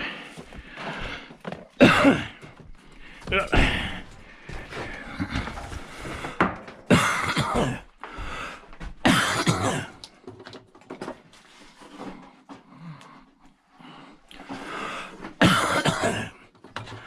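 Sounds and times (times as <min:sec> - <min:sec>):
man coughing: 0:01.8 - 0:02.5, 0:03.2 - 0:04.1, 0:06.9 - 0:08.0, 0:09.0 - 0:10.0, 0:15.4 - 0:16.4
throat-clearing: 0:01.8 - 0:02.5, 0:06.9 - 0:07.9, 0:09.0 - 0:10.0, 0:15.4 - 0:16.4.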